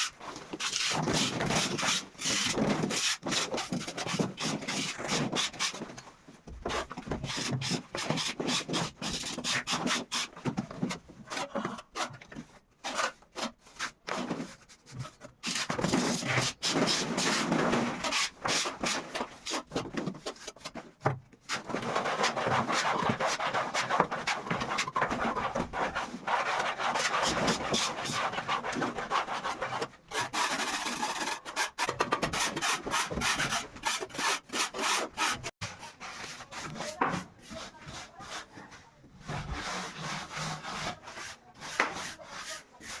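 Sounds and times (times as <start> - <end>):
hand tool scraping hard surface: 21.5 - 43.0.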